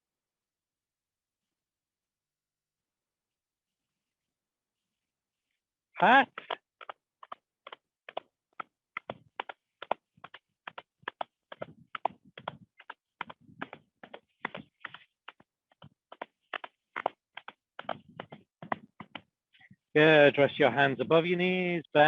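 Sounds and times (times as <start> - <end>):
hands patting knees: 6.0 - 19.7.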